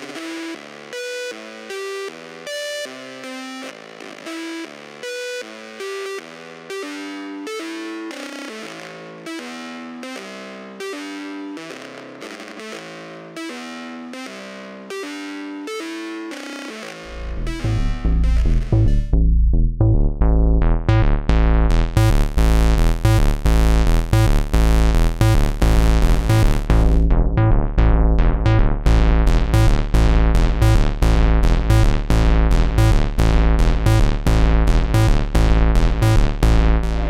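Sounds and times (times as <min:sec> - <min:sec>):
sequenced synthesizer pattern: 0:00.0 - 0:19.3, 0:20.8 - 0:27.5, 0:28.8 - 0:37.0
deep synth bass: 0:17.0 - 0:37.0.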